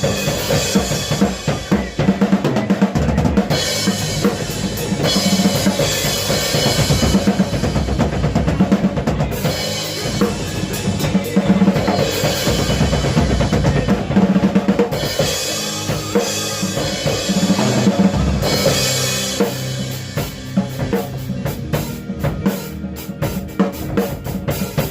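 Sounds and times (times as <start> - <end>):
bass drum and snare groove: 0.0 - 24.9.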